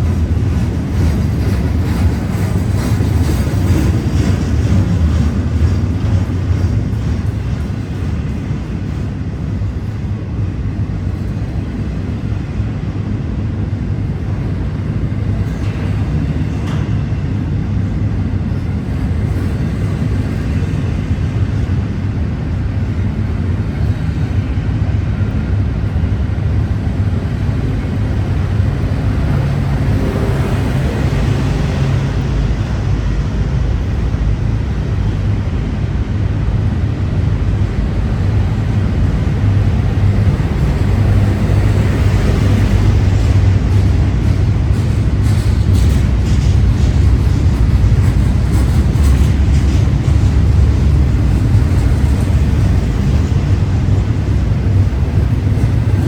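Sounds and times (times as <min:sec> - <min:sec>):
freight train rumbling on rails: 0:00.0 - 0:56.0
high rail noise: 0:00.0 - 0:56.0.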